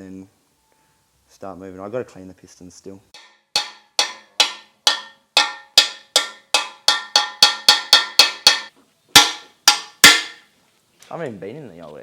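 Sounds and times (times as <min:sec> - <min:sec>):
hammer striking metal: 0:03.2 - 0:10.5.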